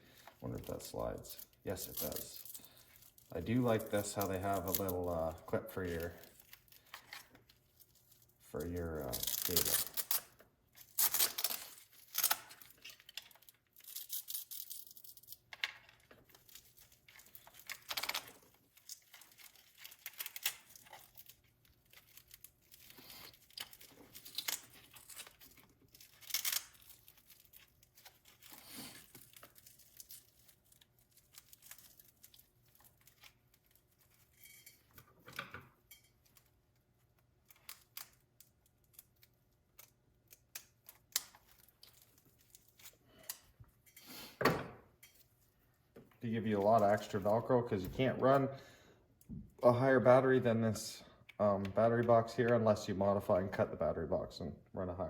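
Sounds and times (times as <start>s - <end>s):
clicks and rustles of handling: 0.1s - 44.0s
velcro strap ripping apart: 9.0s - 15.4s, 16.3s - 33.9s.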